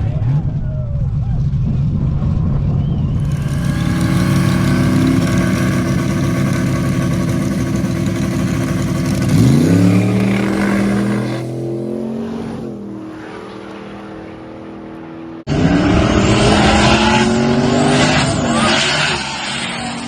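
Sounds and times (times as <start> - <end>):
drag car engine running hard: 3.2 - 12.9.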